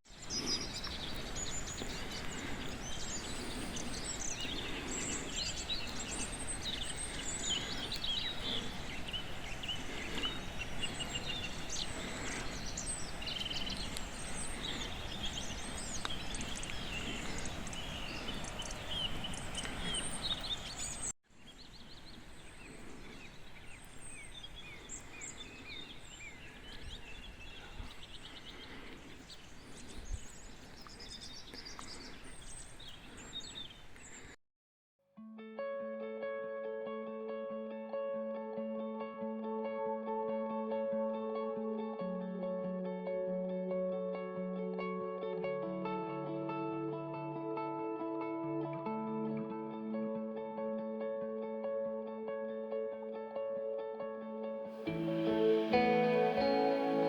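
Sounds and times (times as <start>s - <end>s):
birds singing and chirping: 0.1s - 34.3s.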